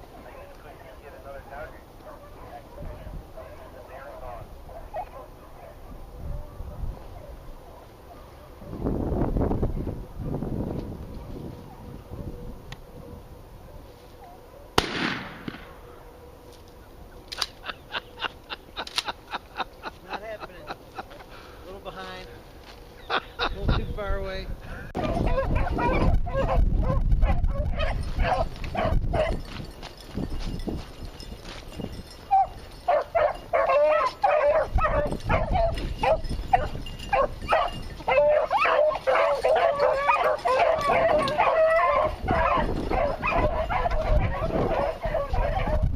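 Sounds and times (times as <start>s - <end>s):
dogs barking and baying: 0.0s - 8.8s, 11.0s - 14.8s, 15.8s - 21.4s, 24.9s - 30.2s, 31.1s - 45.9s
gunshot with echo: 14.8s - 15.8s.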